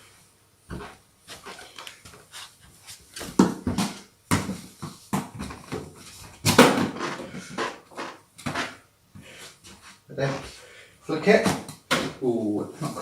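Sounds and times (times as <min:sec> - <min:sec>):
ball bouncing on floor: 0:03.2 - 0:05.9.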